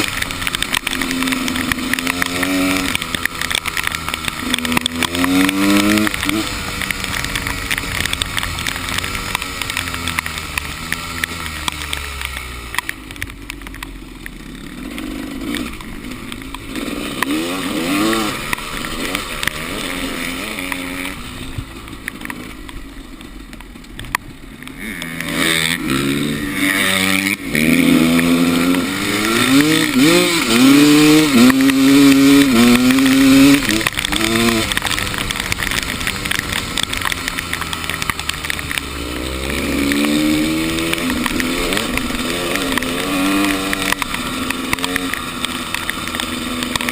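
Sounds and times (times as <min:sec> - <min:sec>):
motorcycle engine revving: 0:00.0 - 0:46.9.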